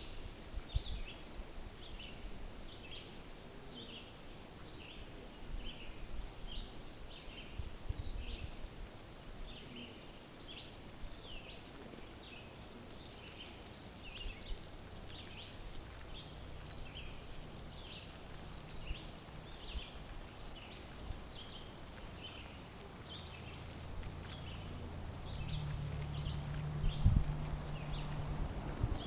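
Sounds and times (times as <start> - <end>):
low background rumble: 10.9 - 29.0.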